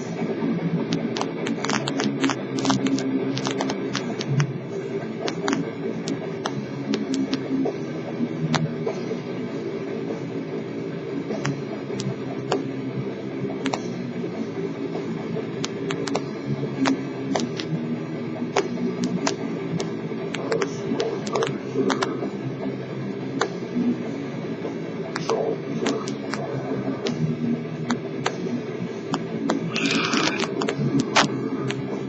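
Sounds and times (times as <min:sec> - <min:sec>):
muffled rock music: 0:00.0 - 0:32.0
sharp clicks: 0:00.9 - 0:04.5, 0:15.6 - 0:17.7, 0:18.6 - 0:22.1, 0:25.2 - 0:27.2.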